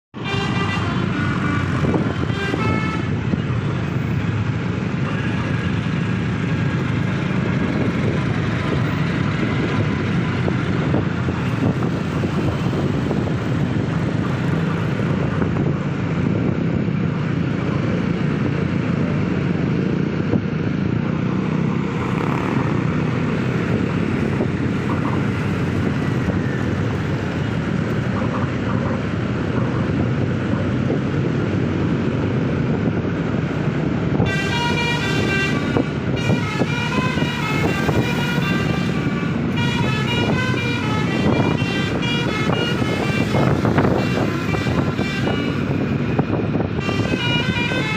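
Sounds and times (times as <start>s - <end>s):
heavy vehicle engines and traffic: 0.1s - 47.9s
musical vehicle horn tune: 0.2s - 3.4s, 34.2s - 47.9s.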